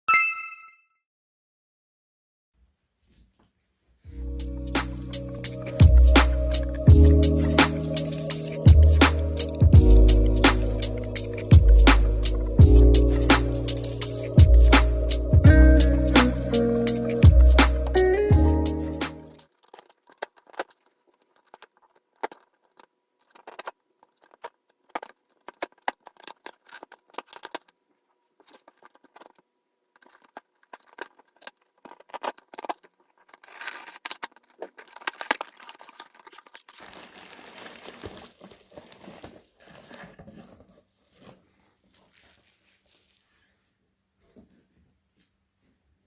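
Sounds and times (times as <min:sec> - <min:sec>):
packaging tearing and rustling: 0:19.4 - 0:43.4
plastic and cardboard crinkles: 0:19.4 - 0:44.8.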